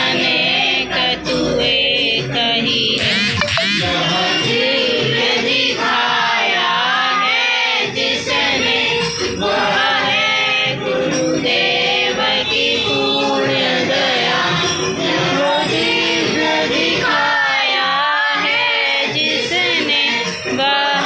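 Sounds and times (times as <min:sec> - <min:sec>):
group singing a prayer song: 0:00.0 - 0:21.0
musical accompaniment: 0:03.0 - 0:04.2.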